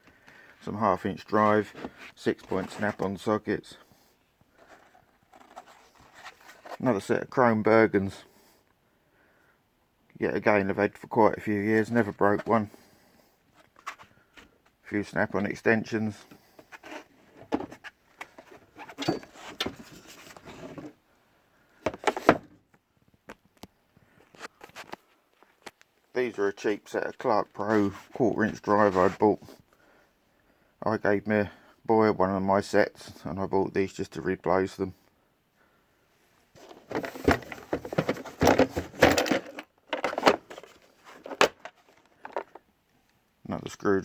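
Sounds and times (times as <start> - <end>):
tools clattering in drawer: 18.4 - 20.9, 36.6 - 42.6
tools clicking and knocking: 36.6 - 42.6.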